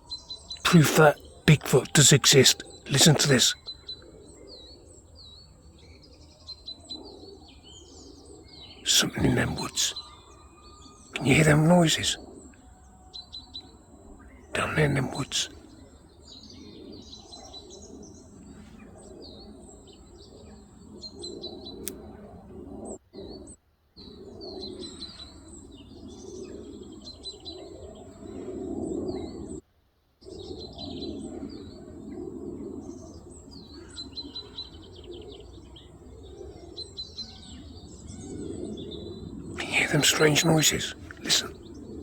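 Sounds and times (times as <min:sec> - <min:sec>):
songbirds chirping and singing: 0:00.0 - 0:23.4, 0:24.0 - 0:29.6, 0:30.2 - 0:42.0
low distant murmur: 0:00.6 - 0:03.6, 0:39.6 - 0:41.6.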